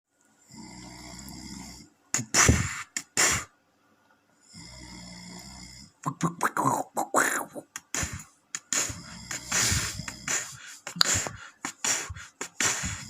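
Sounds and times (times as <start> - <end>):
man snoring: 0.5 - 3.5, 4.5 - 13.0
beatbox mouth percussion: 2.2 - 3.5, 6.0 - 13.0.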